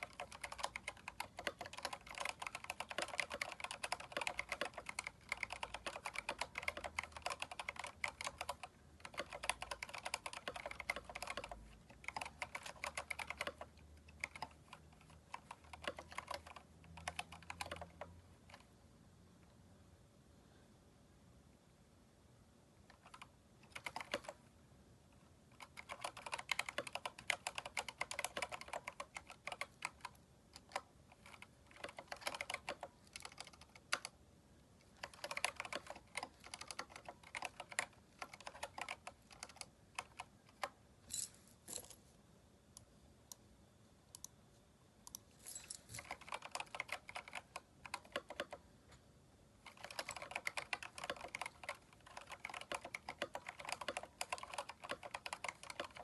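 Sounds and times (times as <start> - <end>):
mechanical keyboard typing: 0.0 - 18.7, 22.8 - 24.5, 25.5 - 34.2, 34.8 - 40.8, 46.0 - 48.6, 49.6 - 56.0.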